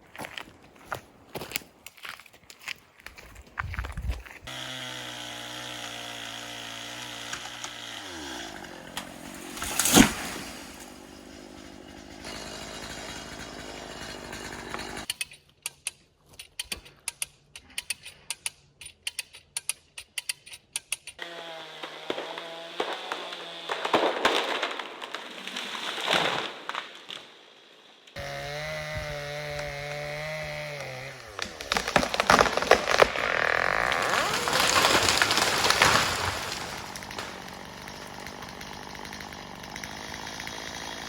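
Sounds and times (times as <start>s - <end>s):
chainsaw engine running: 4.5s - 15.1s, 28.2s - 41.0s.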